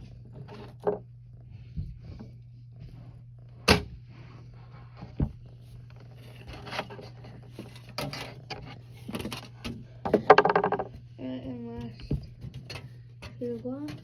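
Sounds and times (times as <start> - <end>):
steady low hum: 0.0 - 14.0
knocks and taps of handled objects: 10.0 - 14.0.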